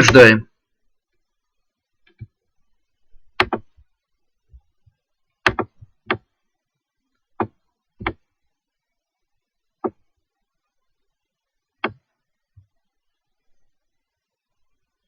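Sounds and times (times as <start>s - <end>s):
computer mouse clicking: 3.4s - 3.7s.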